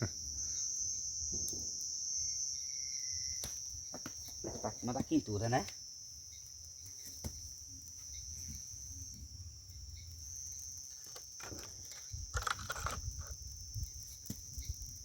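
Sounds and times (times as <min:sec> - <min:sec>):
crickets chirring: 0:00.0 - 0:15.0
crackles and clicks: 0:06.4 - 0:15.0.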